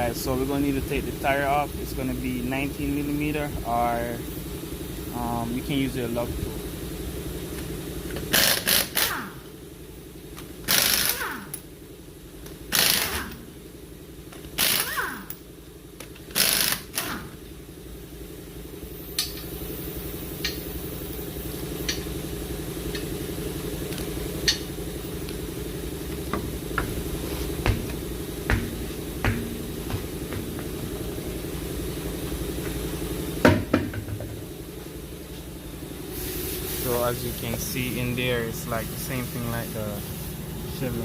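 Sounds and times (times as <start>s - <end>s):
steady low hum: 0.0s - 41.0s
impact wrench bursts: 8.1s - 9.5s, 10.6s - 11.7s, 12.4s - 13.6s, 14.3s - 15.4s, 16.0s - 17.4s.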